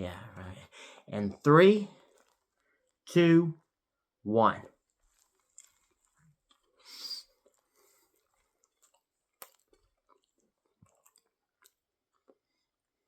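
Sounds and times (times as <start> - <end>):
chewing mouth sounds: 5.1 - 12.4.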